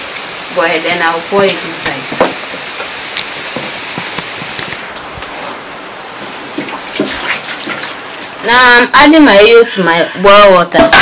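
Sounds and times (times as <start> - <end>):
steady hiss of heating water: 0.0 - 11.0.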